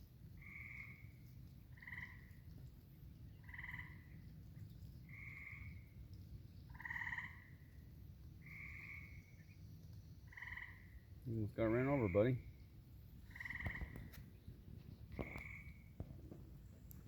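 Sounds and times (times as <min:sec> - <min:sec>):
frogs trilling: 0:00.4 - 0:02.4, 0:03.4 - 0:04.2, 0:05.1 - 0:05.9, 0:06.7 - 0:07.8, 0:08.4 - 0:09.6, 0:10.2 - 0:12.6, 0:13.2 - 0:14.2, 0:15.1 - 0:16.1.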